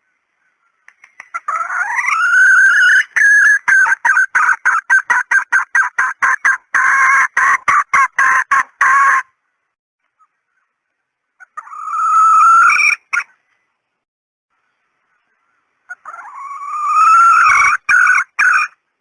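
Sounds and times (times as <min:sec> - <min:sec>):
hen calling: 0:00.0 - 0:13.6, 0:15.1 - 0:19.0
hen clucking: 0:00.5 - 0:09.4, 0:11.4 - 0:13.4, 0:15.9 - 0:18.8.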